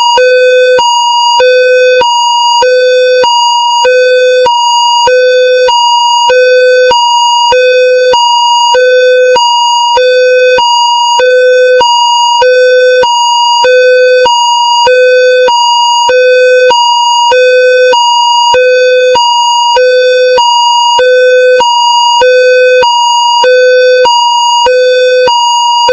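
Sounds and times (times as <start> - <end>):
two-tone level crossing alarm: 0.0 - 25.9.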